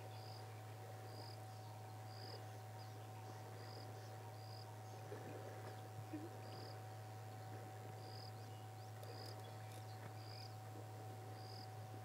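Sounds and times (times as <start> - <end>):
insect chirping: 0.0 - 5.0, 8.0 - 10.6, 11.3 - 11.8
steady low hum: 0.0 - 12.0.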